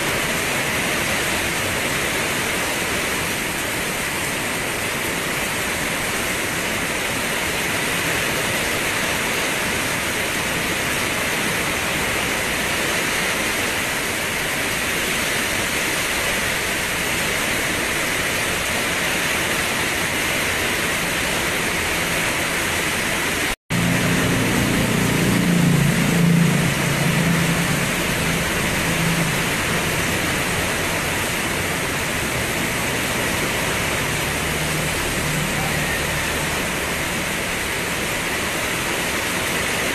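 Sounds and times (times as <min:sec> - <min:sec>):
steady rain hiss: 0:00.0 - 0:39.9
low rumble: 0:23.7 - 0:34.2.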